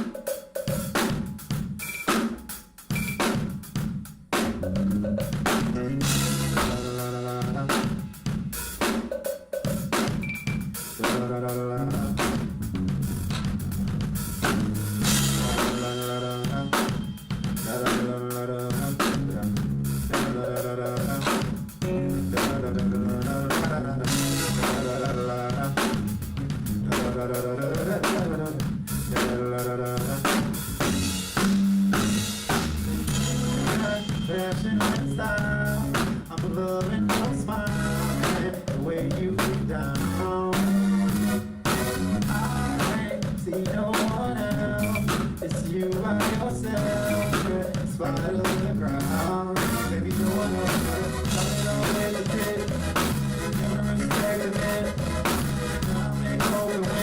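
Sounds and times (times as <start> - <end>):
drum kit hits: 0.0 - 11.2, 12.0 - 18.1, 30.3 - 40.2
drum kit beat: 0.0 - 57.0
jazz soul band playing: 4.6 - 7.8, 11.1 - 20.5, 21.1 - 43.2, 44.0 - 57.0
sustained bass notes: 4.6 - 7.8, 11.0 - 43.0, 44.2 - 45.4, 46.0 - 57.0.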